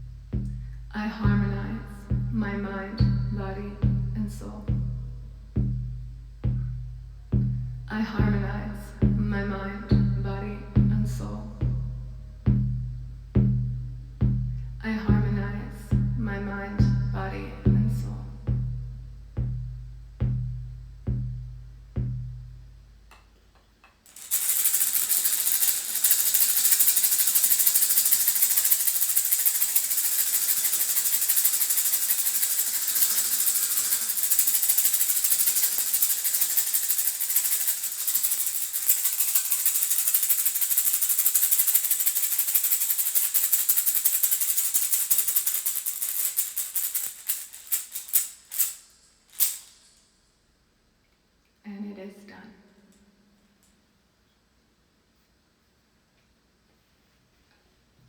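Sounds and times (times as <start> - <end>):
hand drum ringing beats: 0.0 - 22.8
hand rattle shaken: 24.1 - 50.3.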